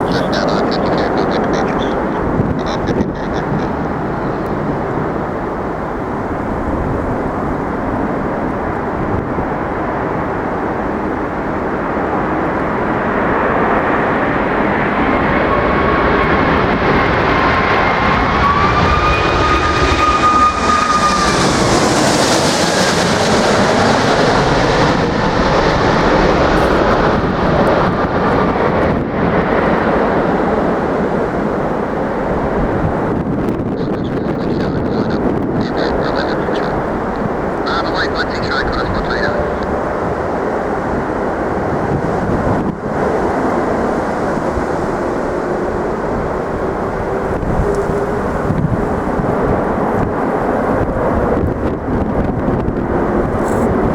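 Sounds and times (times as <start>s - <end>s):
jet engines roaring and whining: 0.0s - 53.9s
wind buffeting microphone: 0.0s - 53.9s.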